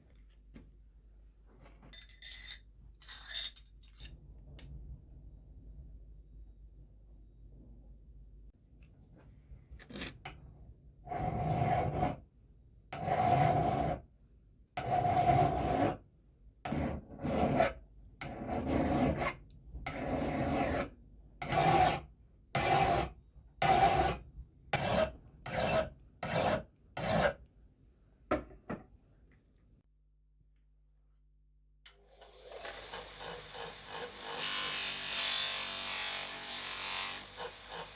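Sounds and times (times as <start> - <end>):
hand file rasping on steel: 13.0 - 14.0, 14.8 - 16.0, 16.7 - 24.2, 24.8 - 27.4.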